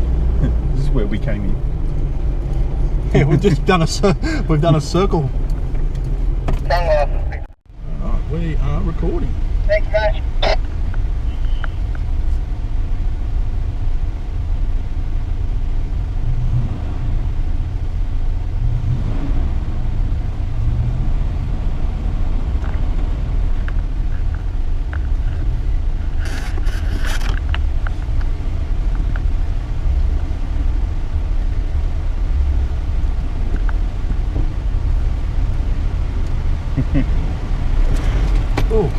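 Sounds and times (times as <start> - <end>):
engine and road rumble: 0.0 - 38.9
sharp scraping: 25.0 - 28.1.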